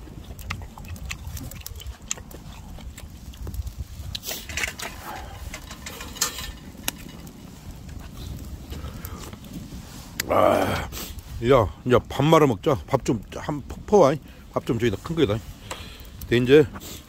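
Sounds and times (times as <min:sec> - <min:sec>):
people slurping and chewing: 0:00.0 - 0:07.2
wind rumble on microphone: 0:00.0 - 0:17.0.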